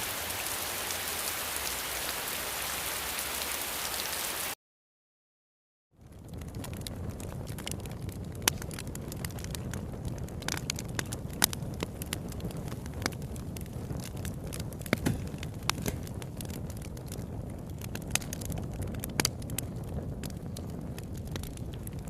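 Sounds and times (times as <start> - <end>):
sharp crackles and pops: 6.0 - 22.0.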